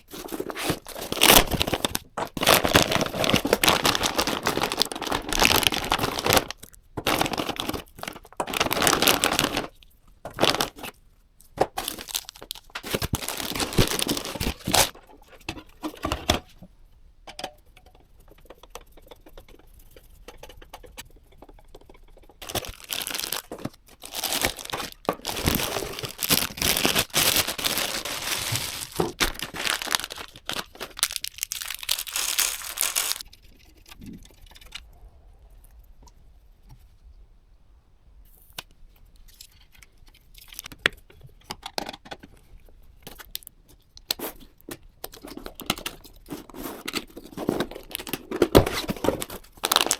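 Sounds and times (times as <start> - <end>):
packaging crinkling and tearing: 0.0 - 11.0, 11.6 - 15.0, 22.4 - 33.3, 39.2 - 40.8, 43.0 - 49.9
small clicks and handling noises: 5.9 - 22.8, 38.3 - 49.8.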